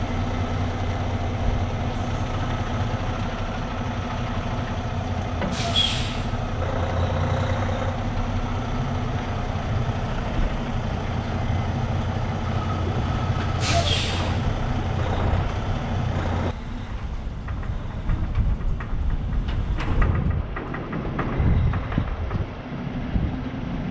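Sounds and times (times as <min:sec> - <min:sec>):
diesel truck engine running: 0:00.0 - 0:23.9
air brake hiss: 0:05.5 - 0:06.4, 0:13.6 - 0:14.5.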